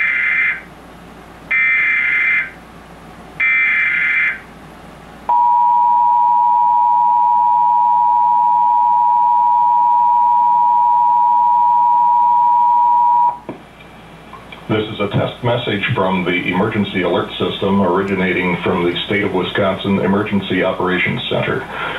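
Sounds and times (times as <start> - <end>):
two-tone attention signal: 5.3 - 13.4.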